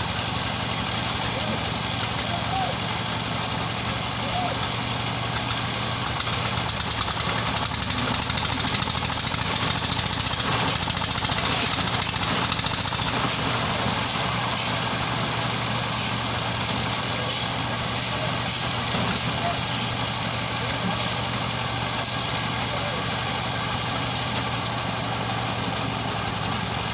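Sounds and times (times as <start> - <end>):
heavy machine engine running: 0.0 - 26.9
rattling hammering: 6.2 - 23.5.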